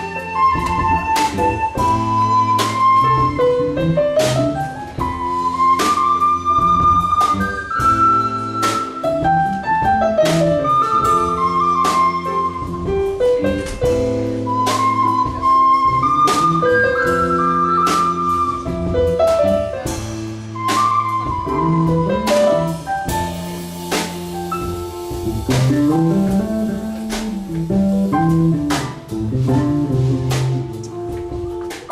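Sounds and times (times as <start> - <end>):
live band playing: 0.0 - 31.9
drum and cymbal hits: 18.2 - 31.9.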